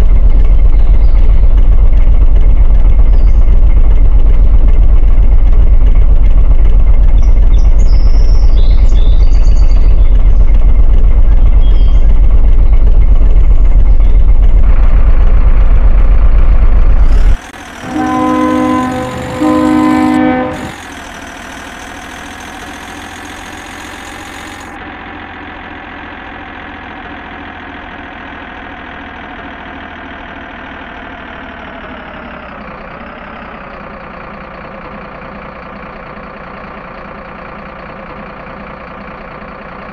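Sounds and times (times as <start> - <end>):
quiet engine hum: 0.0 - 21.7
loud low engine rumble: 0.0 - 39.9
horn blasts: 17.1 - 21.0.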